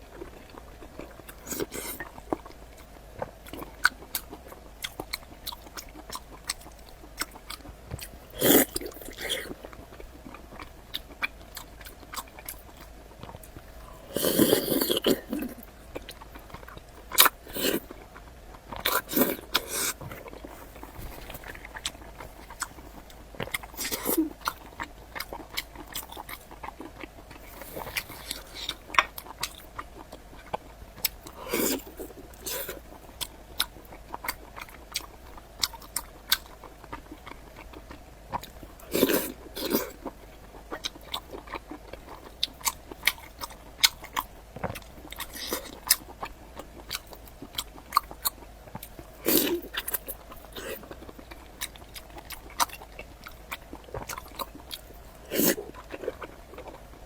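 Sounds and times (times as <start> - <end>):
wet mouth clicks and chewing: 0.1 - 57.0
biting and slurping: 3.5 - 18.0, 18.7 - 33.0, 33.6 - 40.1, 40.7 - 56.8.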